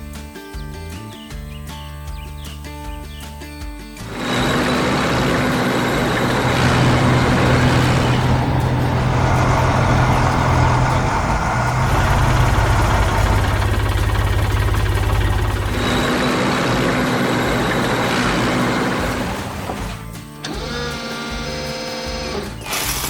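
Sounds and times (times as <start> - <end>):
heavy machine engine droning: 4.0 - 20.8
rough noisy machine sound: 4.0 - 23.0.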